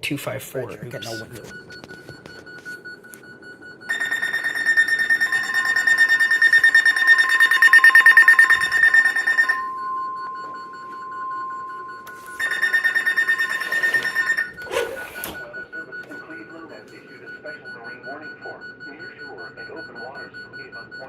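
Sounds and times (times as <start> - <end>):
rapidly pulsing alarm beep: 0.6 - 21.0
steady alert tone: 3.9 - 9.8.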